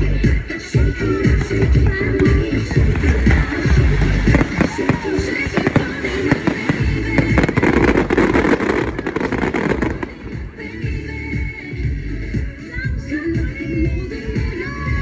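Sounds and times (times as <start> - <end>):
loud music: 0.0 - 15.0
fireworks banging and crackling: 0.8 - 10.9.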